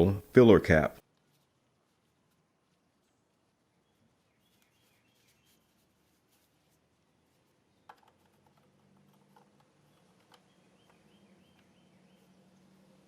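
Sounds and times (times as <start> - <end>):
distant bird chirps: 3.6 - 5.9, 7.6 - 13.0.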